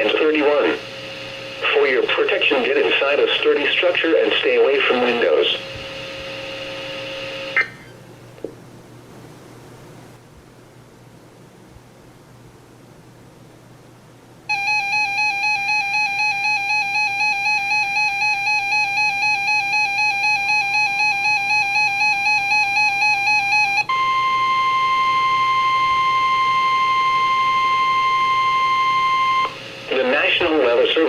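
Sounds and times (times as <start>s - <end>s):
steady alarm tone: 0.0s - 8.0s, 14.5s - 30.4s
pulsing electronic alarm tone: 14.5s - 29.6s.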